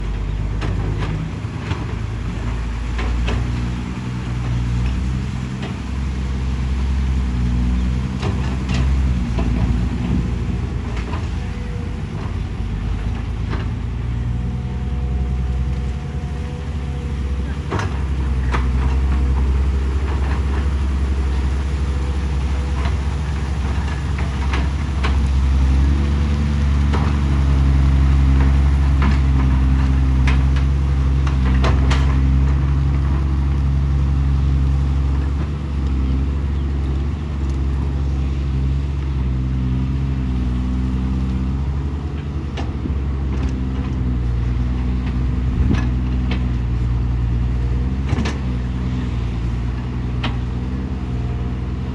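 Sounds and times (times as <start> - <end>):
excavator diesel engine running: 0.0 - 51.9.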